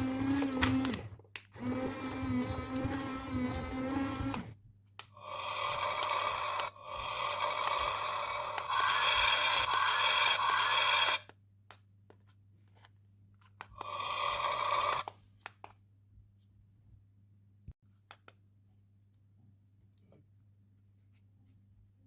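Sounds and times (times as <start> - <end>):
buzzy electronic toy sound effect: 5.2 - 11.2, 13.8 - 15.1.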